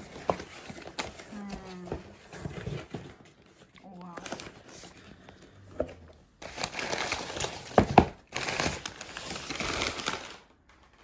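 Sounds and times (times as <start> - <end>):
plastic packaging crinkling: 6.4 - 11.0.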